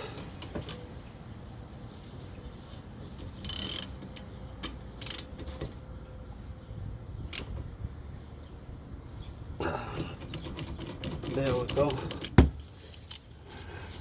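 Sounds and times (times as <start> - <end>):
ratchet clicking: 3.4 - 5.6, 10.0 - 12.4.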